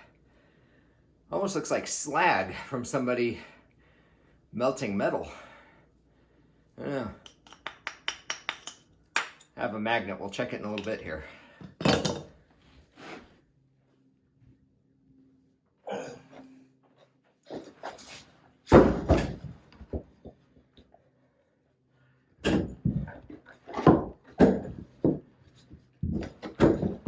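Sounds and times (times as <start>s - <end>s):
stone knocking on stone: 7.2s - 9.4s.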